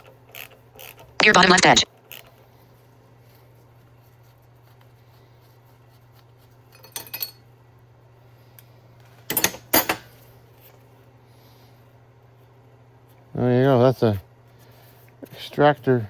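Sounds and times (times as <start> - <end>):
metal clinking and rattling: 6.7 - 7.4, 9.3 - 10.2.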